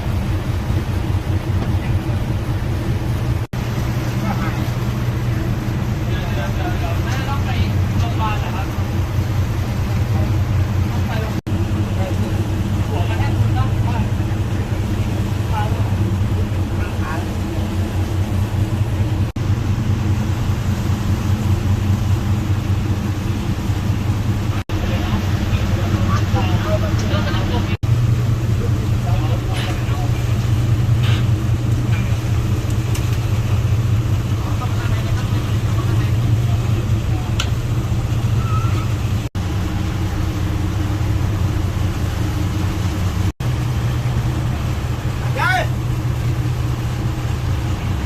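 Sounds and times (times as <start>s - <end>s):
broad rushing noise: 0.0s - 48.0s
engine droning steadily: 0.0s - 48.0s.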